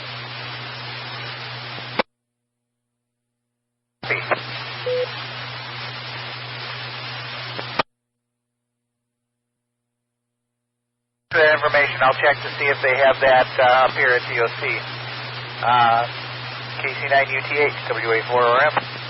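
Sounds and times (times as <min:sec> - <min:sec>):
radio channel hiss: 0:00.0 - 0:02.0, 0:04.0 - 0:07.8, 0:11.3 - 0:19.0.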